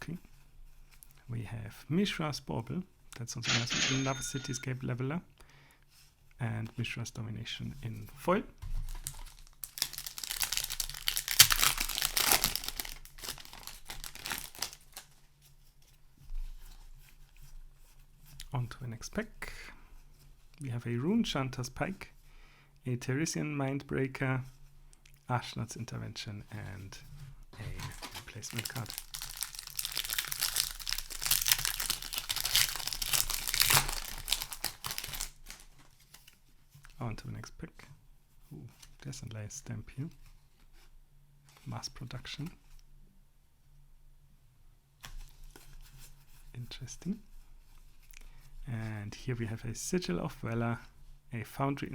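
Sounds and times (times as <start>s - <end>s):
plastic wrapper crinkling and tearing: 8.8s - 15.3s, 27.6s - 37.0s.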